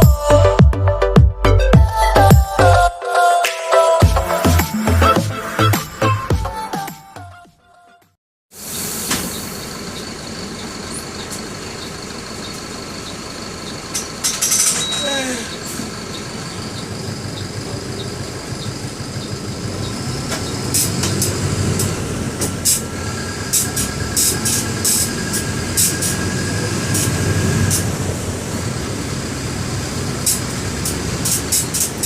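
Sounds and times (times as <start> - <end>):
bus diesel engine drone: 0.0 - 2.9, 8.6 - 32.0.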